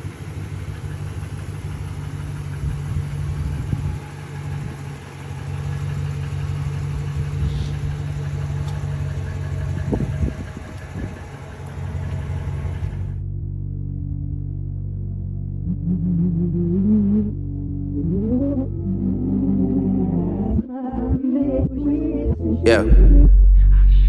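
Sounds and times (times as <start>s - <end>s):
vehicle engine idling: 0.0s - 23.8s
music: 13.4s - 24.0s.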